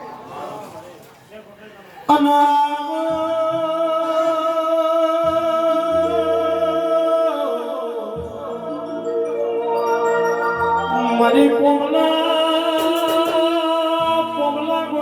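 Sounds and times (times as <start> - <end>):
electronic organ chords: 5.8 - 14.2.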